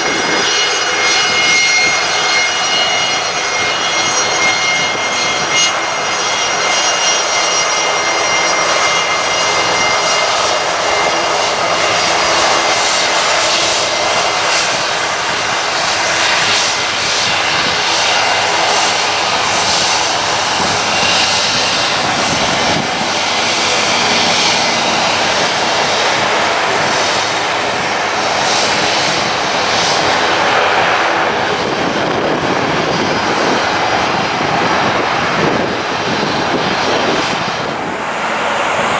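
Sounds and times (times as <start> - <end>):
airliner engines roaring: 0.0 - 38.9
high-pitched whining tones: 0.0 - 38.9.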